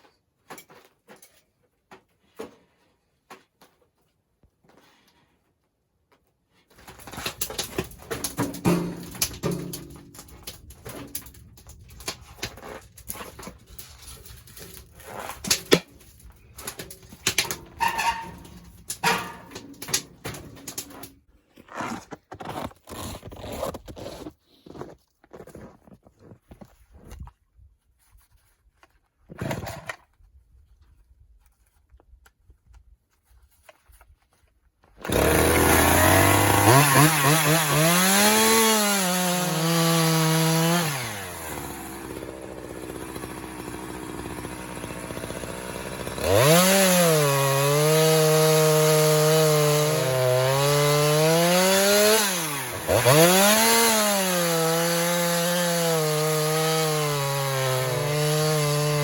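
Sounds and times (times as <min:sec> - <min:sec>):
chainsaw revving and idling: 0:07.3 - 0:11.4, 0:13.6 - 0:21.1, 0:35.0 - 0:59.0.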